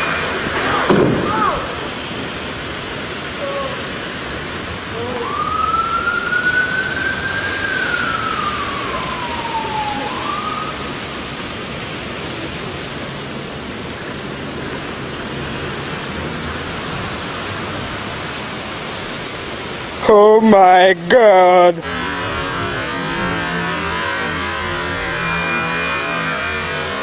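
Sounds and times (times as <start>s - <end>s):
rain hissing: 0.0s - 27.0s
sliding tone: 21.4s - 27.0s.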